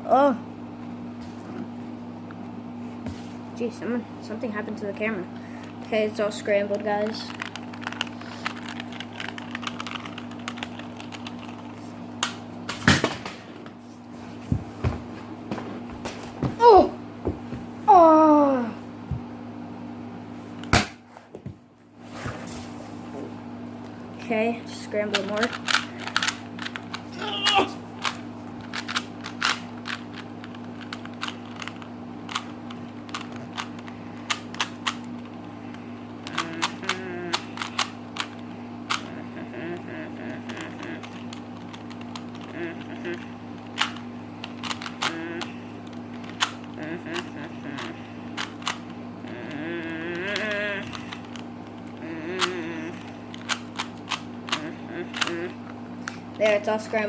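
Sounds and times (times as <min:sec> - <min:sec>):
steady low hum: 0:00.0 - 0:57.0
plastic puzzle cube clicking: 0:25.1 - 0:26.9, 0:43.1 - 0:45.2, 0:53.3 - 0:55.5.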